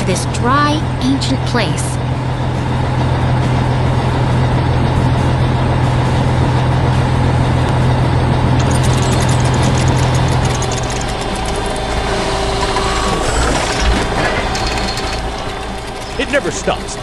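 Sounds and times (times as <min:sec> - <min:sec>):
heavy machinery engine humming: 0:00.0 - 0:17.0
rapid mechanical clicking: 0:08.6 - 0:17.0.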